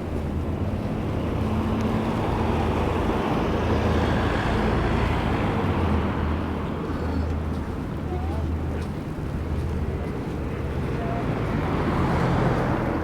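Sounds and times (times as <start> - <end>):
vehicle passing: 9.6 - 13.0.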